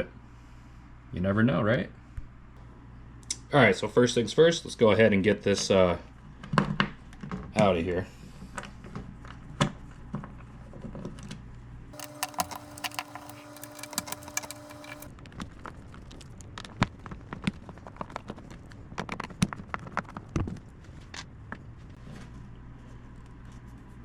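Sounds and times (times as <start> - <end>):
power screwdriver running: 12.0 - 15.1
screws and parts clinking: 12.0 - 15.1.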